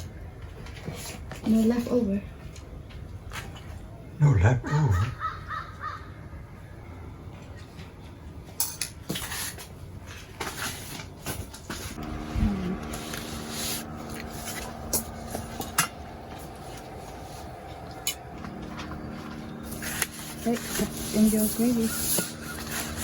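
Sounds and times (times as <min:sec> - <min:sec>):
steady low hum: 0:11.9 - 0:23.0.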